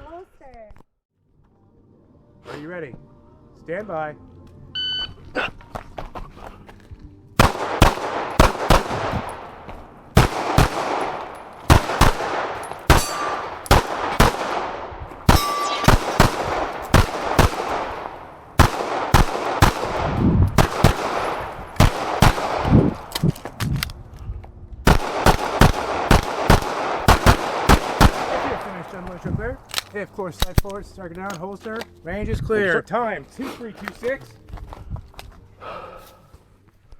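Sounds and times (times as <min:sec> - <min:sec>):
pistol shots: 0:07.4 - 0:23.3, 0:24.9 - 0:29.8.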